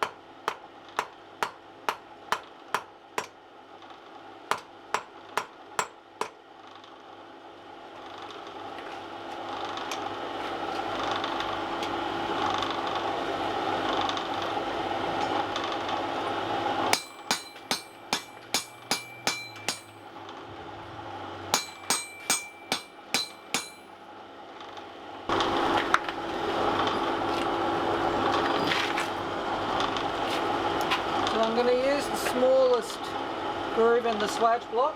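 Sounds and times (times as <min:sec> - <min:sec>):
hammer striking steel on anvil: 0:00.0 - 0:03.4, 0:04.5 - 0:06.4, 0:16.9 - 0:20.1, 0:21.5 - 0:24.0.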